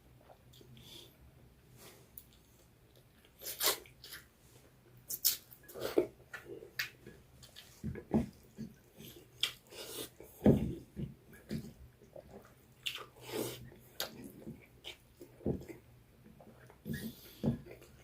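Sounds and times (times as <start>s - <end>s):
chewing and lip-smacking: 8.4s - 10.3s, 11.6s - 13.2s.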